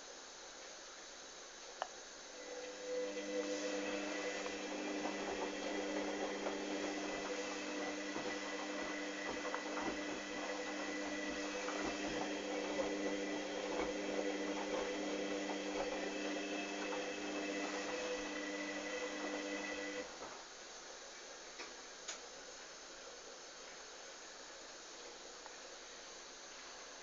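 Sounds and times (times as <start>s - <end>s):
washing machine hum: 2.1s - 21.2s.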